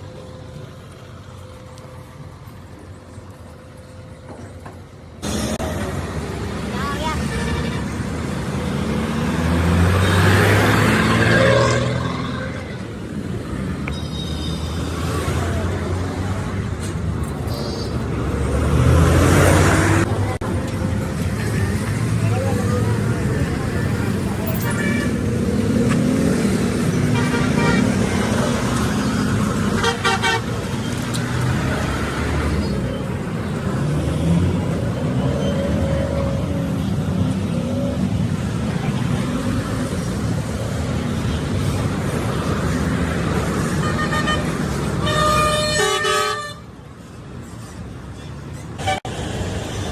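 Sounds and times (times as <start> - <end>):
truck horn blast: 29.7 - 30.6, 43.8 - 46.6.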